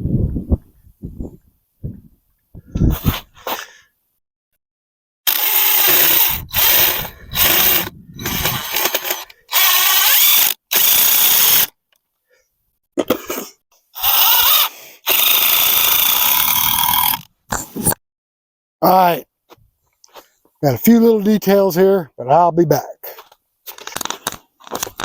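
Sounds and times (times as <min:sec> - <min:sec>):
power drill whining: 0:05.3 - 0:11.8, 0:14.0 - 0:17.3.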